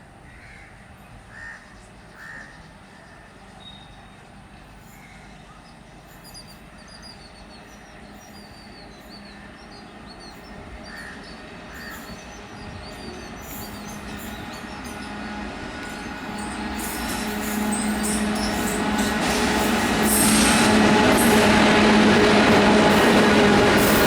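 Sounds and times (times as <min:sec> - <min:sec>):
electric locomotive rumble: 0:02.6 - 0:24.0.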